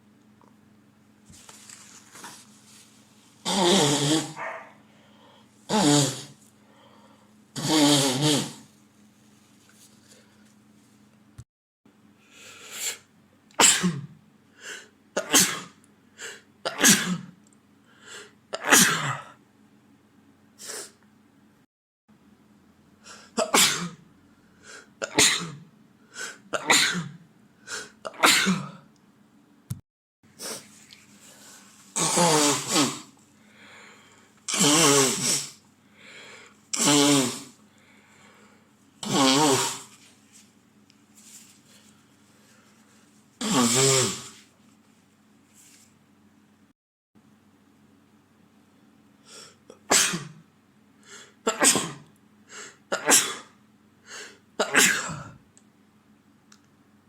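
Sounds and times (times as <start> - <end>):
man sneezing: 3.4 - 4.6, 13.6 - 14.1, 18.6 - 19.4, 23.3 - 24.0, 25.0 - 25.6, 26.2 - 28.8, 32.0 - 33.1, 34.5 - 35.6, 36.7 - 37.6, 39.0 - 40.0, 43.4 - 44.4, 49.9 - 50.4, 51.5 - 52.0, 54.6 - 55.4.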